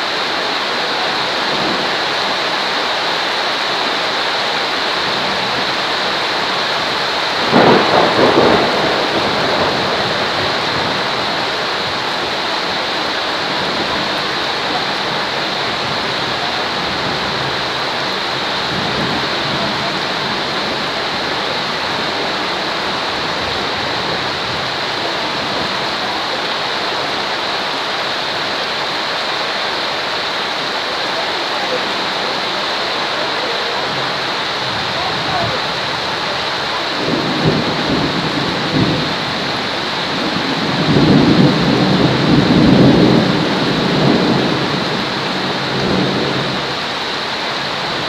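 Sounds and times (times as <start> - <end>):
steady rain: 0.0 - 48.0
thunder: 7.3 - 12.2, 36.9 - 46.8.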